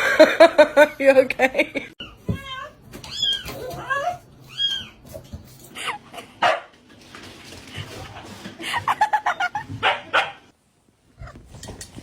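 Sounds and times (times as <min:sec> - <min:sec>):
dog barking: 0:06.4 - 0:06.7, 0:09.8 - 0:10.5.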